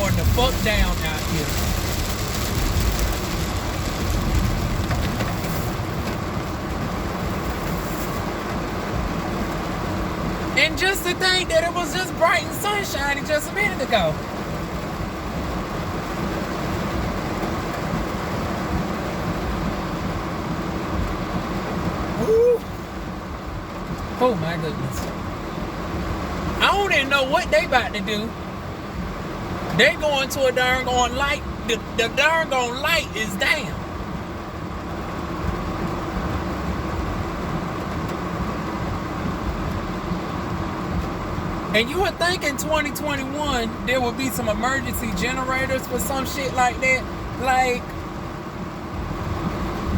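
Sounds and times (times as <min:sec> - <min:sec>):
low rumble: 0:00.0 - 0:10.6
car driving heard from inside: 0:00.0 - 0:49.9
heavy rain: 0:00.0 - 0:49.9
tyres on wet road: 0:00.0 - 0:49.9.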